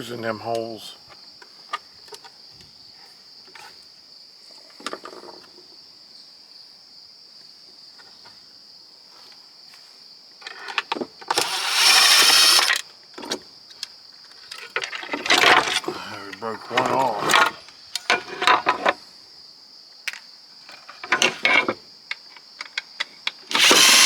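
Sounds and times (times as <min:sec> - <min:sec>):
crickets chirping: 0:00.0 - 0:24.0
power driver running: 0:11.3 - 0:12.8, 0:23.5 - 0:24.0.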